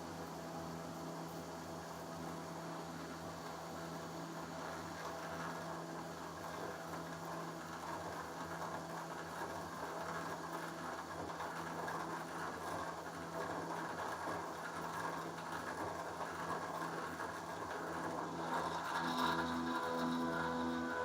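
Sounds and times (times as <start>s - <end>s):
milling machine spindle humming: 0.7s - 21.0s
end mill cutting material: 18.2s - 21.0s.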